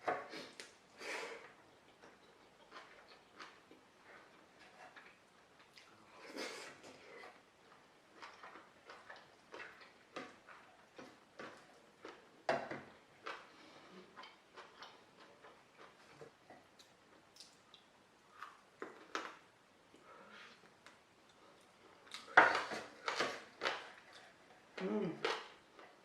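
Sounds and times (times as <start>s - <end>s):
chewing food: 1.4s - 19.4s.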